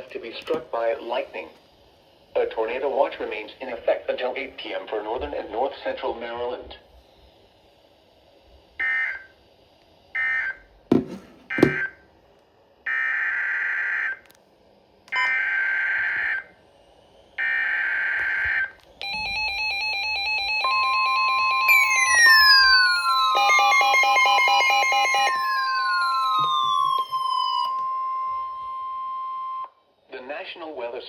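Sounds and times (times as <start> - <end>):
screeching data beeps: 17.4 - 29.7
data tone bursts: 18.3 - 29.7
warbling electronic alert tone: 19.0 - 29.6.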